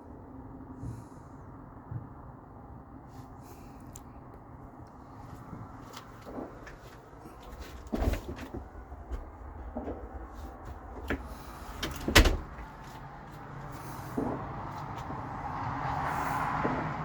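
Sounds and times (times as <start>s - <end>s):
gunfire and firework bangs: 13.9s - 14.5s.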